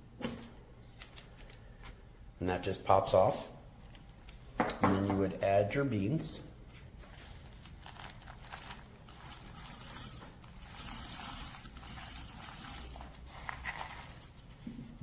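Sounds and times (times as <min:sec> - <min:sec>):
coffee beans pattering and rattling: 0:07.0 - 0:14.7.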